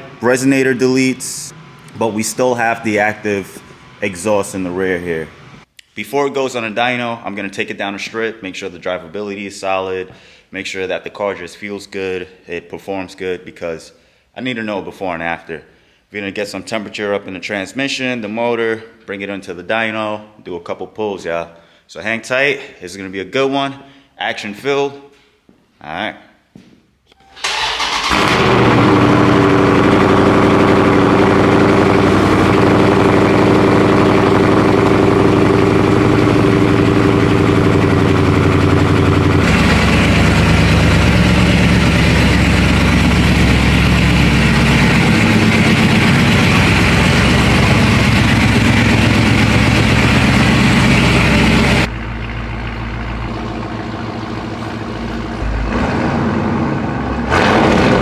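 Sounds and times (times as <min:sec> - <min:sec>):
loud car engine idling: 0:00.0 - 0:05.7, 0:27.6 - 0:58.0.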